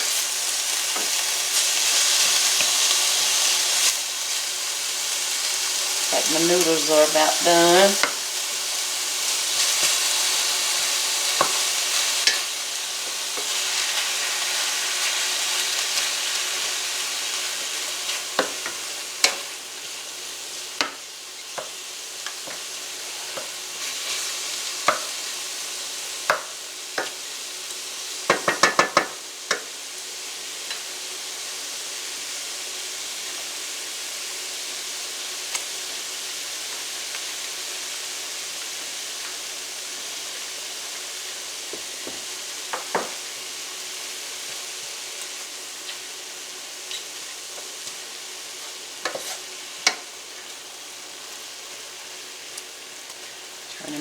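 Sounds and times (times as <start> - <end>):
meat sizzling in a skillet: 0.0 - 54.0
quick taps on a pan: 28.3 - 29.6
utensil scraping a pan: 49.0 - 49.5.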